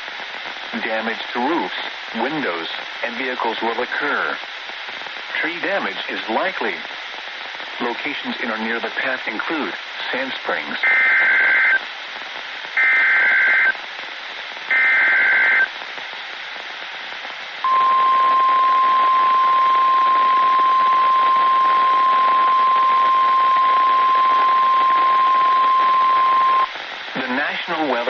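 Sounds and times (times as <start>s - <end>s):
radio static hiss: 0.0s - 28.0s
weather radio alarm tone: 10.8s - 11.8s, 12.8s - 13.7s, 14.7s - 15.7s, 17.6s - 26.7s.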